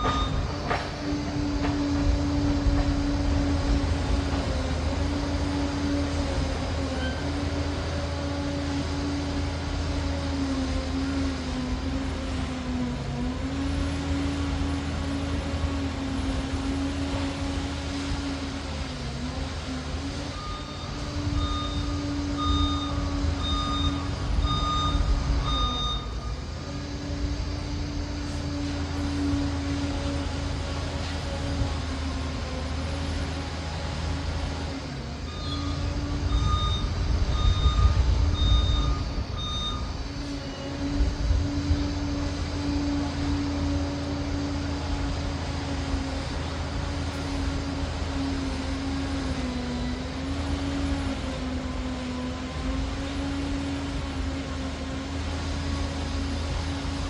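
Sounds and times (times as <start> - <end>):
reversing alarm beeping: 0.0 - 1.0, 20.1 - 27.2, 35.2 - 41.6
diesel engine rumbling: 0.0 - 57.0.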